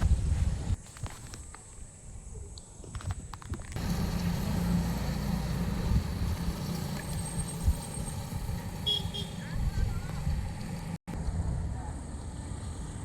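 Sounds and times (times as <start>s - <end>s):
vehicle engine running: 3.8s - 12.1s.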